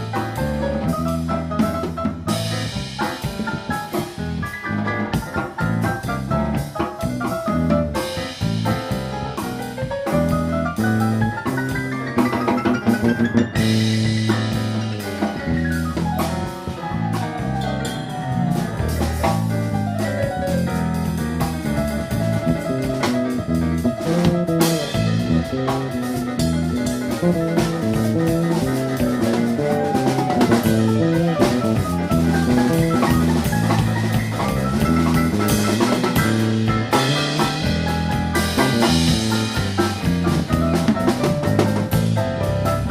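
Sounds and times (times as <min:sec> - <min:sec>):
jazz ensemble playing: 0:00.0 - 0:42.9.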